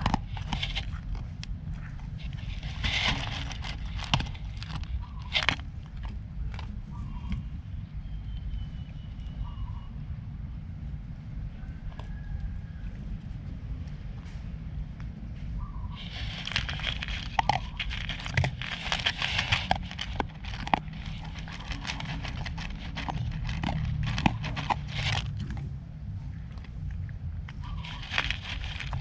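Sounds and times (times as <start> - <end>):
pets crunching dry food: 0.0 - 7.5, 16.0 - 29.0
steady low rumble: 0.0 - 29.0.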